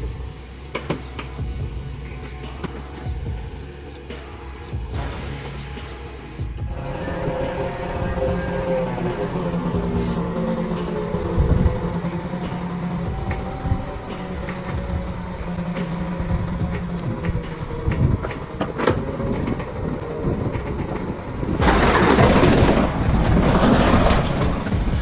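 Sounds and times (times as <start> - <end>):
loud rushing noise: 0.0 - 20.0, 21.5 - 25.0
heavy machinery running: 21.6 - 25.0
knocks and clanks: 21.6 - 25.0.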